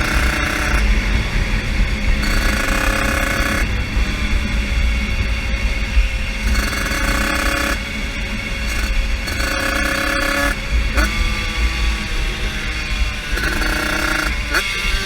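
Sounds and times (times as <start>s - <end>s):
motorbike engine running hard: 0.0s - 15.0s.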